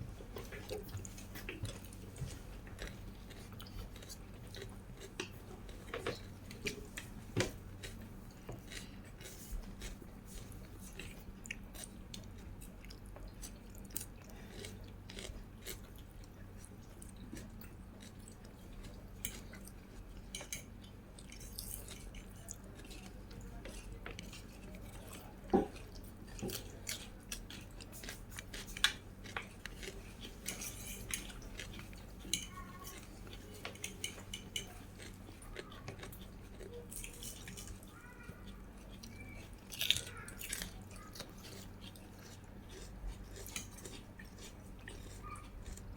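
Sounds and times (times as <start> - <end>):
faint low hum: 0.0 - 45.9
person chewing: 0.4 - 45.9
utensils clinking against dish: 30.4 - 34.8.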